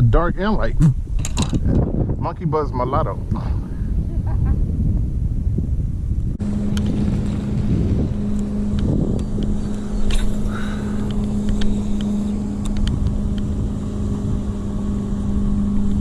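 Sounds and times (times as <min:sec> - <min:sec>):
boat motor humming: 0:06.3 - 0:16.0
small clicks: 0:11.0 - 0:13.5.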